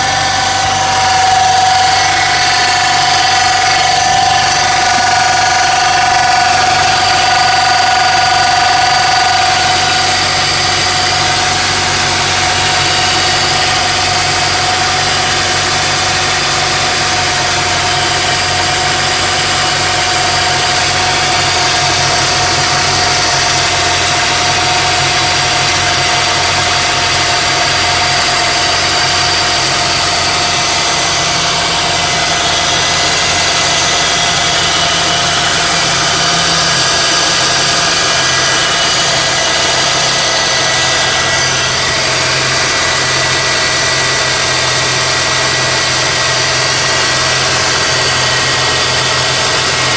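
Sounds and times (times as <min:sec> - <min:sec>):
car engine idling: 0:00.0 - 0:49.9
pulley whining: 0:00.0 - 0:49.9.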